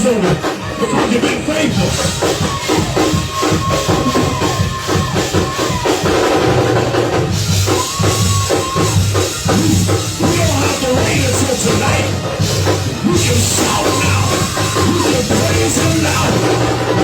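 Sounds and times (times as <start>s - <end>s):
bass line: 0.0s - 17.0s
drum kit and tambourine hits: 0.0s - 17.0s
live band playing gospel groove: 0.0s - 17.0s.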